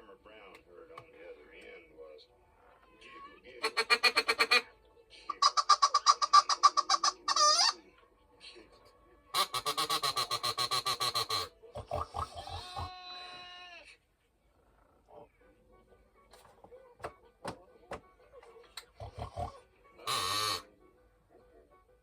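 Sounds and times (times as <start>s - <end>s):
animal squeals: 3.6s - 4.7s, 5.3s - 7.8s, 9.4s - 13.8s, 19.0s - 20.7s
rapid pulsing animal calls: 3.6s - 4.7s, 5.3s - 7.8s, 9.4s - 13.0s, 19.0s - 20.6s.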